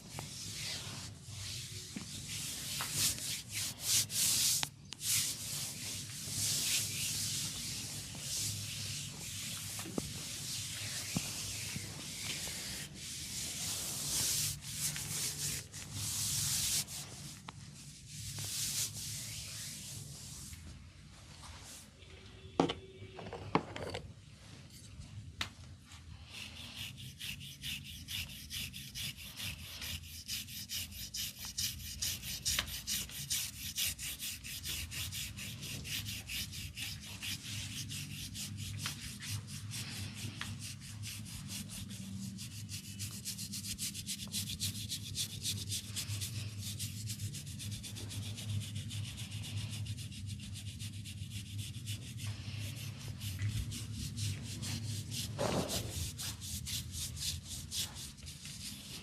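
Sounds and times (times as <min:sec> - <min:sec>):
hands rubbing through hair: 0:00.0 - 0:21.8.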